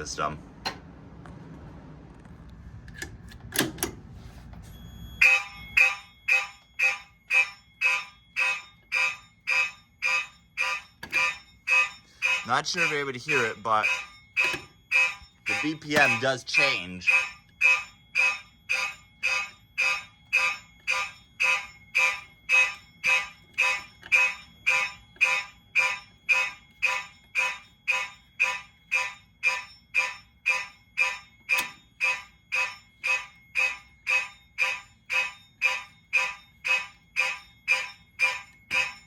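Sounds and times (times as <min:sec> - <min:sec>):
fire alarm horns pulsing: 0:04.6 - 0:39.0.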